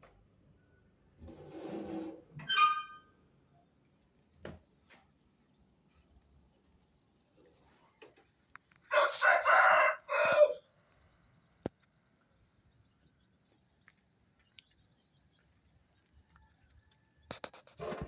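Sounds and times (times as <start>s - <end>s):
rooster crowing: 8.9s - 10.8s.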